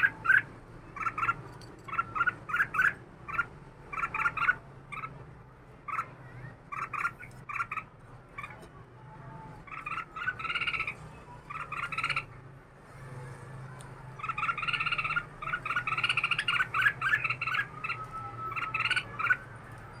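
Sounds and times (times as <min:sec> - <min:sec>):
bulbul singing chattering notes: 0:14.2 - 0:20.0.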